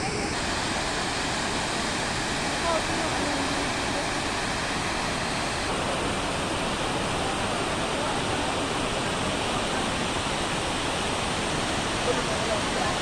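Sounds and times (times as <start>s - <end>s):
river water rushing: 0.0s - 13.0s
faint voices: 5.4s - 10.8s, 11.5s - 13.0s.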